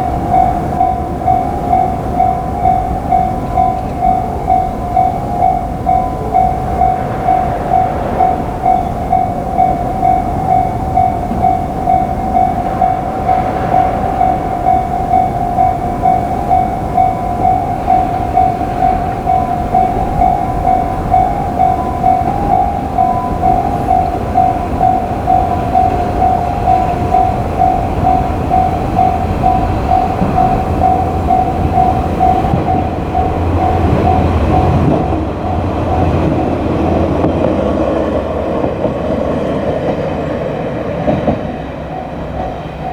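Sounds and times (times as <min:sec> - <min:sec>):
level crossing bell clanging: 0:00.0 - 0:42.9
train rumbling past: 0:00.0 - 0:42.9.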